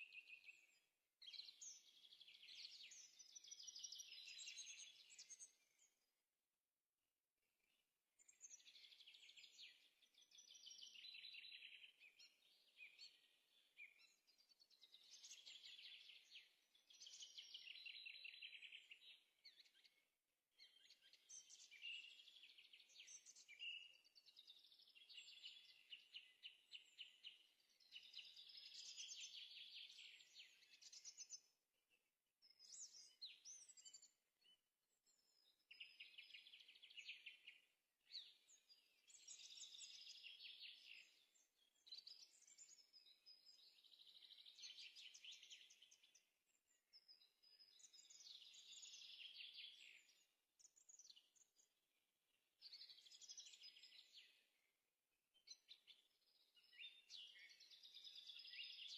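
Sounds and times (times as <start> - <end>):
songbird trilling and chirping: 46.9 - 51.4.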